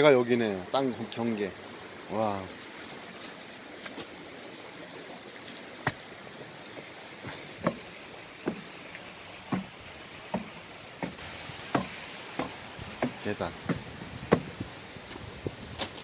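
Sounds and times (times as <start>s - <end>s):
stream rushing: 0.0s - 16.0s
footsteps: 7.2s - 8.7s, 9.5s - 9.7s, 10.3s - 16.0s.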